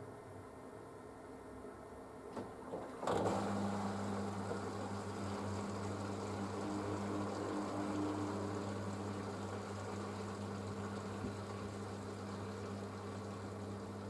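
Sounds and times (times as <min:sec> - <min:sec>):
washing machine motor humming: 0:03.0 - 0:14.0.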